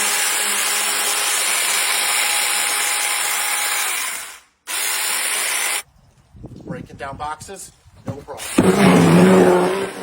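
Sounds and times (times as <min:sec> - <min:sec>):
electric chainsaw high whine: 0:00.0 - 0:05.8.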